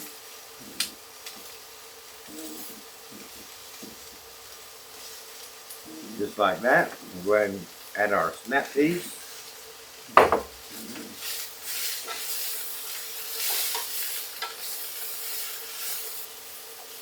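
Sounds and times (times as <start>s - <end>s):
vegetables sizzling in a frying pan: 0.0s - 17.0s
sharp knock: 10.2s - 10.6s.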